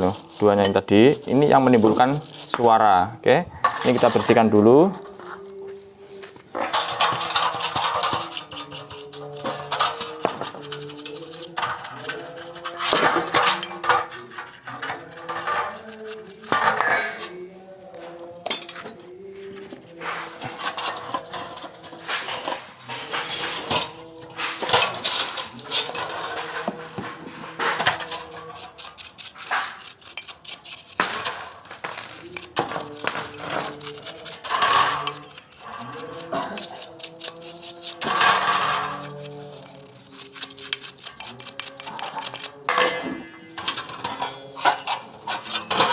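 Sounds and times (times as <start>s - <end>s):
metal tools clinking and clattering: 0.1s - 2.6s, 6.5s - 17.6s, 18.3s - 19.2s, 19.9s - 36.9s, 40.7s - 45.9s.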